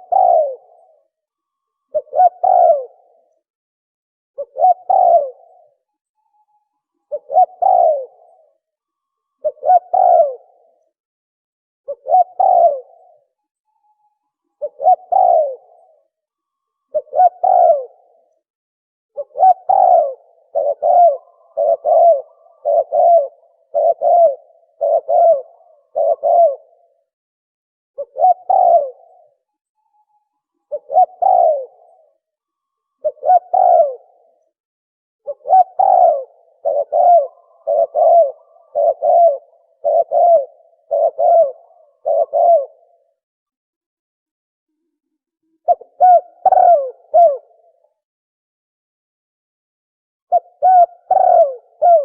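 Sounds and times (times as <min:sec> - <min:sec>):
dove cooing: 0:00.0 - 0:01.2, 0:01.9 - 0:03.4, 0:04.4 - 0:05.9, 0:07.1 - 0:08.7, 0:09.4 - 0:10.9, 0:11.9 - 0:13.4, 0:14.6 - 0:16.2, 0:16.9 - 0:18.4, 0:19.2 - 0:27.1, 0:28.0 - 0:29.5, 0:30.6 - 0:32.3, 0:32.9 - 0:34.4, 0:35.2 - 0:43.2, 0:45.4 - 0:47.9, 0:50.3 - 0:52.0.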